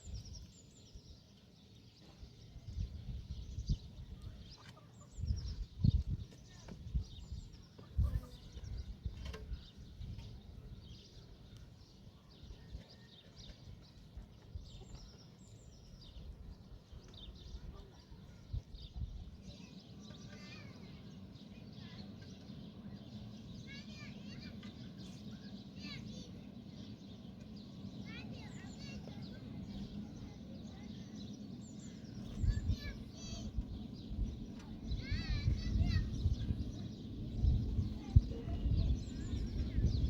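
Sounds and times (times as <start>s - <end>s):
birds chirping and calling: 1.9s - 40.0s
low background rumble: 27.8s - 40.0s.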